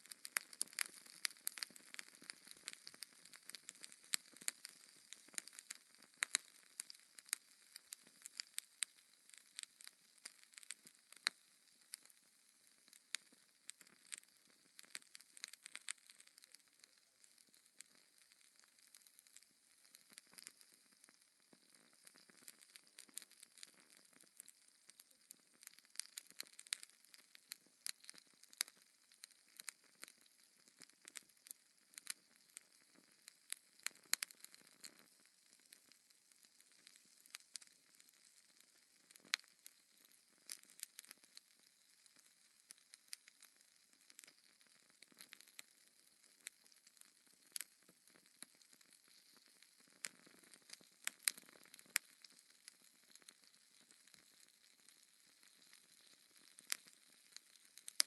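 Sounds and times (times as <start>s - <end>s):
faint fire hiss: 0.0s - 58.0s
logs crackling in fireplace: 0.0s - 58.0s.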